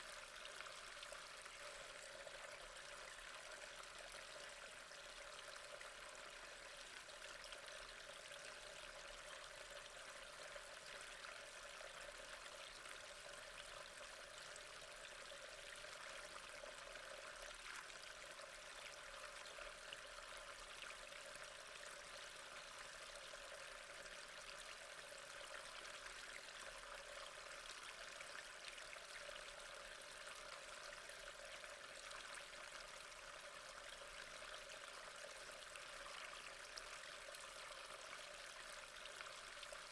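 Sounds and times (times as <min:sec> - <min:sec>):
water trickling in tank: 0:00.0 - 0:39.9.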